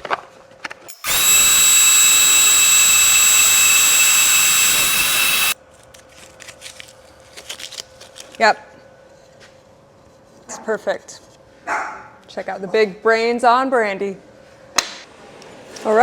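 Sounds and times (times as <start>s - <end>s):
drill press whining: 0.9s - 5.6s.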